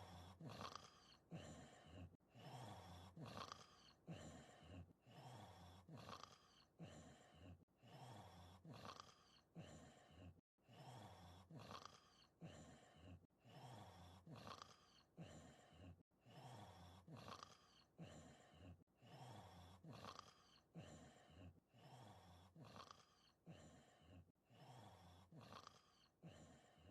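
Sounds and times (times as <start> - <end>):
cartoon snoring with whistle: 0.0 - 26.9.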